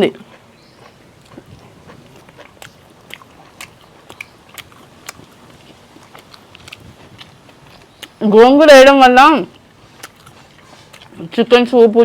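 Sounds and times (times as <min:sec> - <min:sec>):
person chewing food: 0:00.2 - 0:08.3, 0:09.5 - 0:11.4
wet mouth clicks: 0:01.2 - 0:08.2, 0:10.0 - 0:11.2.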